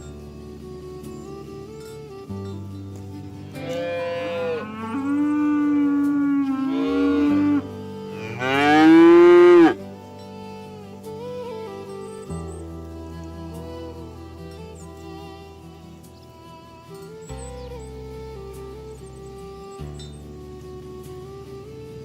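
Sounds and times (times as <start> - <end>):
soft background music: 0.0 - 22.0
cattle mooing: 3.5 - 9.8.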